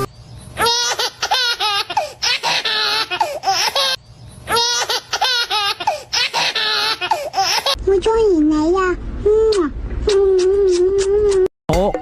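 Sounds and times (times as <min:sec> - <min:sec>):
baby laughing: 0:00.6 - 0:07.8.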